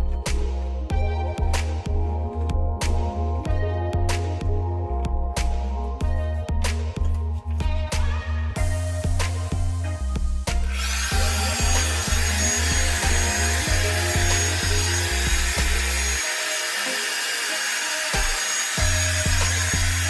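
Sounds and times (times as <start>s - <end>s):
background music with bass beat: 0.0s - 16.2s, 18.2s - 20.0s
hair dryer brush running: 10.6s - 20.0s.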